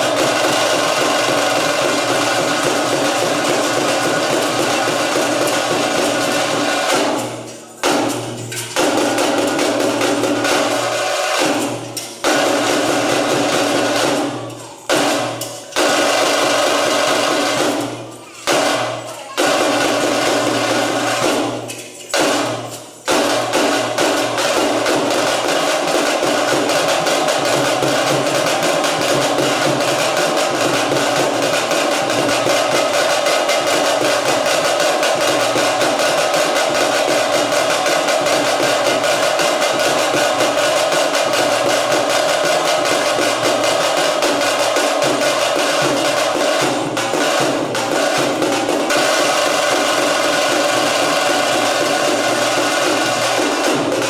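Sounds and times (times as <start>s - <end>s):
fast drumming: 0.0s - 54.0s.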